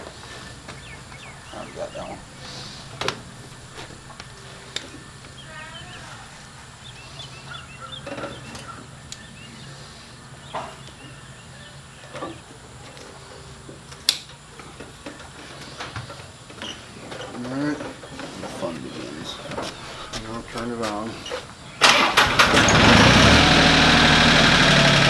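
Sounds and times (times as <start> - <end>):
poultry calling: 0.2 - 9.9.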